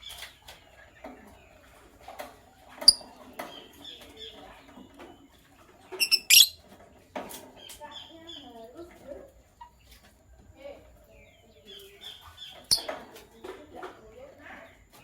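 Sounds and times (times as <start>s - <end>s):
lovebirds chirping: 2.6s - 6.7s, 11.0s - 15.0s.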